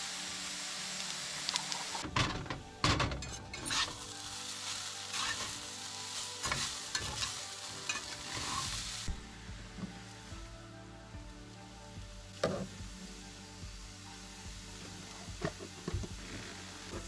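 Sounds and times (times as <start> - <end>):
food sizzling in a frying pan: 0.0 - 17.0
utensil scraping a pan: 3.0 - 4.1, 5.1 - 5.6, 6.4 - 8.8.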